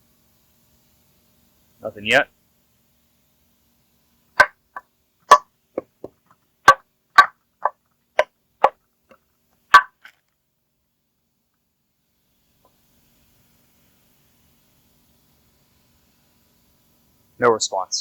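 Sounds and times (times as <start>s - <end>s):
wooden tree knocks: 5.3s - 7.3s.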